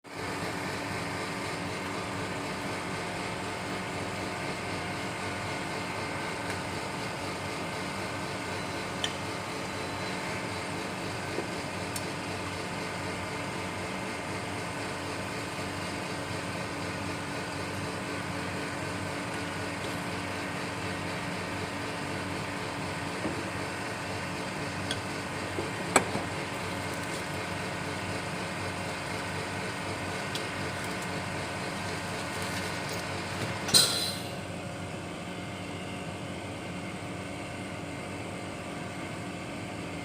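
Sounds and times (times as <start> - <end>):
workshop equipment humming: 0.1 - 40.0.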